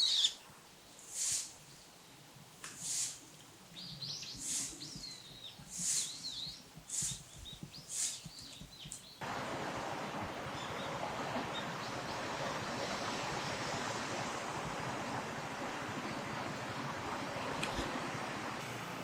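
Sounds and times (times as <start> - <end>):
small birds calling: 0.0 - 2.0, 2.8 - 9.2
rush like flowing water: 9.2 - 19.0.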